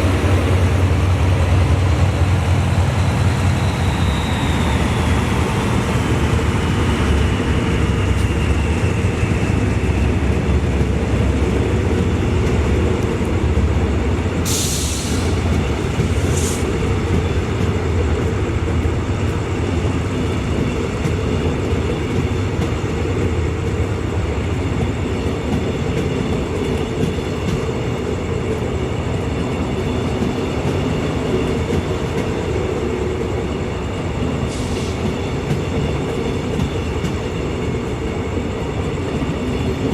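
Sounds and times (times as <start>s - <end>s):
train wheels rumbling: 0.0s - 39.9s
wheel squeal: 3.5s - 5.4s.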